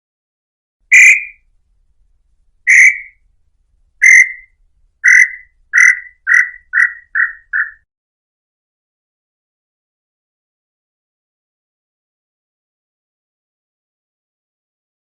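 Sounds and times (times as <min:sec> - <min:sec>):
bird singing short notes: 0:00.9 - 0:01.4, 0:02.7 - 0:03.2, 0:04.0 - 0:07.8.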